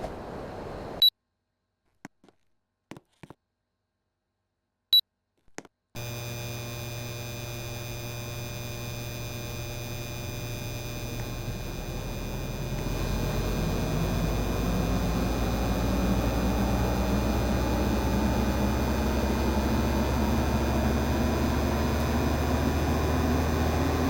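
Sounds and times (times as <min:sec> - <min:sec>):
air conditioner hum with tones: 0:06.0 - 0:24.0.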